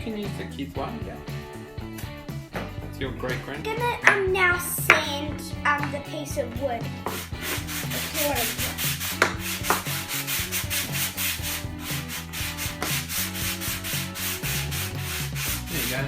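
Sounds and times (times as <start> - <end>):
sandpaper rubbing wood: 7.0 - 16.0.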